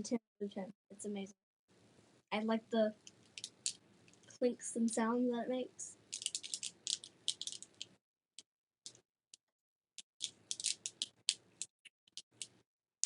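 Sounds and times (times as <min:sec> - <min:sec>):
plastic fidget toy clicking: 0:06.1 - 0:07.9, 0:10.2 - 0:12.6.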